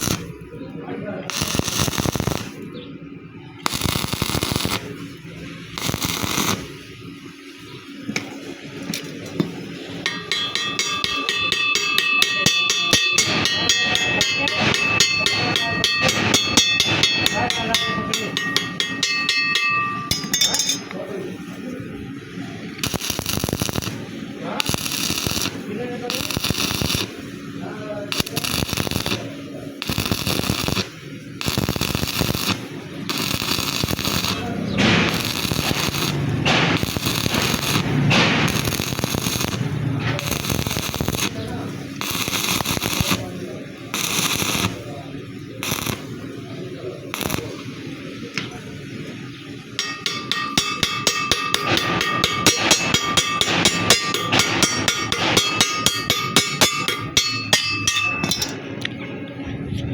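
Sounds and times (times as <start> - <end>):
electric welding arc crackling: 0.0 - 0.6, 1.3 - 2.7, 3.6 - 19.1, 21.7 - 57.7
hammer striking ringing metal: 9.4 - 21.0, 33.2 - 39.6, 49.8 - 58.7.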